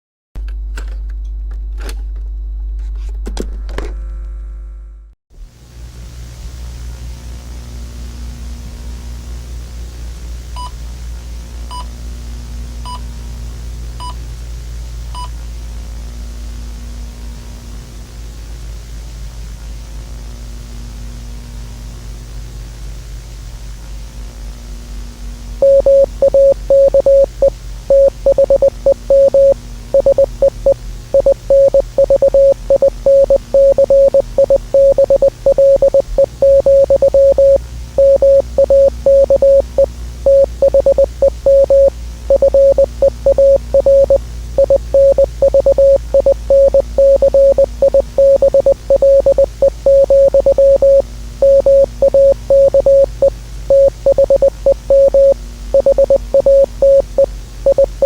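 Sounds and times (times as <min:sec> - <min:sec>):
faint static: 0:25.6 - 0:58.0
low hum: 0:25.6 - 0:58.0
morse code beeps: 0:25.6 - 0:58.0.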